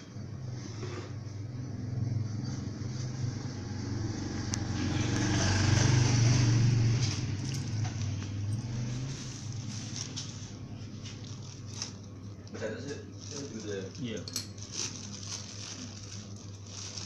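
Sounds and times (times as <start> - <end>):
engine humming: 1.2 - 13.6.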